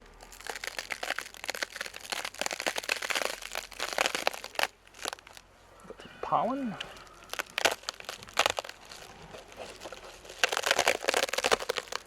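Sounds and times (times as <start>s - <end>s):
crackling and rustling: 0.0s - 12.0s.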